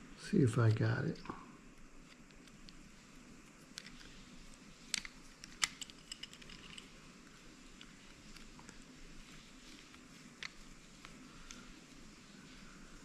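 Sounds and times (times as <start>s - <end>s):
small metal parts clicking: 4.9s - 7.0s.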